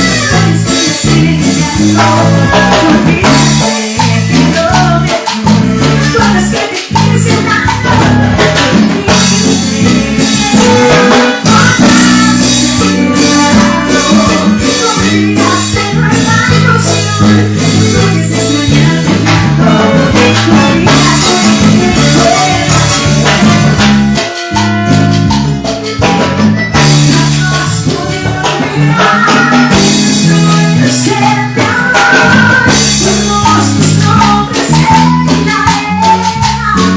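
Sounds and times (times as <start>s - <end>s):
live band playing dance music: 0.0s - 36.9s.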